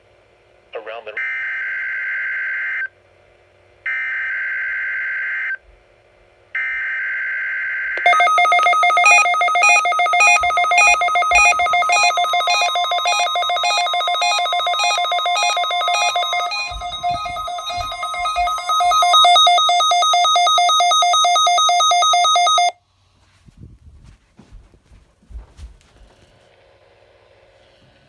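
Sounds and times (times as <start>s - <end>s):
data header bursts: 8.0s - 22.7s
pulsing electronic alert tone: 8.0s - 22.7s.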